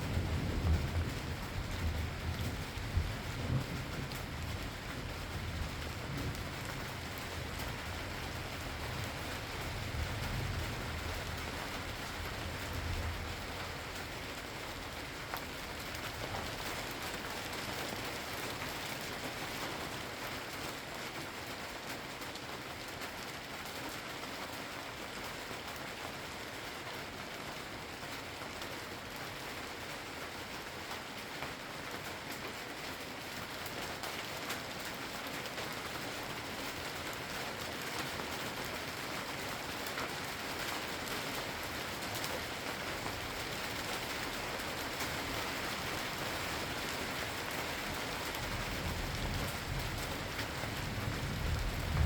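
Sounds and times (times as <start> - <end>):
distant thunder rumble: 0.0 - 14.4, 48.4 - 52.0
rain pattering: 0.0 - 52.0.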